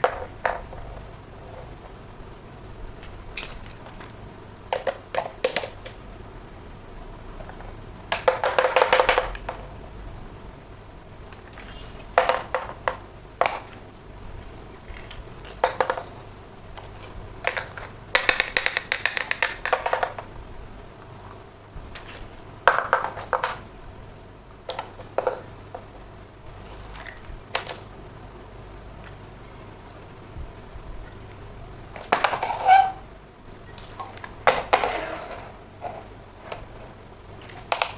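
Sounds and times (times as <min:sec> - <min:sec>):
plastic toy pieces clicking: 0:04.7 - 0:06.4, 0:08.1 - 0:09.6, 0:16.8 - 0:20.3, 0:37.4 - 0:37.9.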